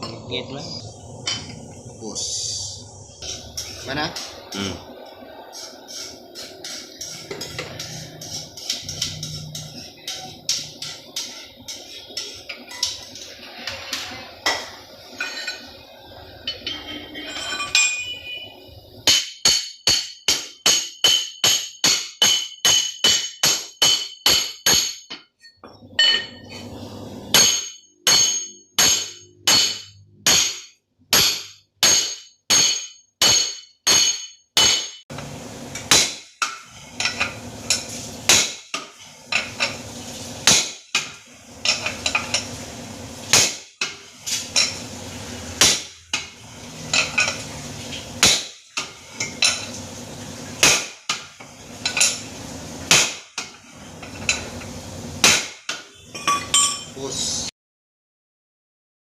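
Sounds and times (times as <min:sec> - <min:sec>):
hammer striking metal: 0:19.0 - 0:25.2, 0:27.3 - 0:35.0, 0:45.6 - 0:46.3.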